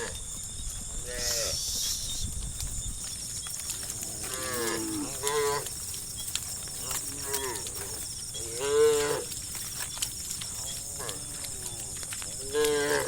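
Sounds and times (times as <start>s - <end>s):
cows mooing: 3.8s - 9.8s, 10.5s - 13.0s.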